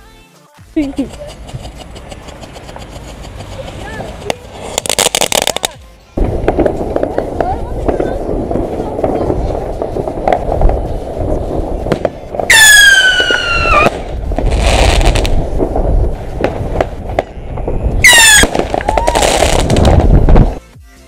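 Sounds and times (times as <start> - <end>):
hissing crackle of fireworks: 0.7 - 20.6
sharp firework bangs: 1.8 - 20.5
low rumble: 6.2 - 12.5, 13.3 - 20.6
whistling fireworks shrieking: 6.2 - 20.5.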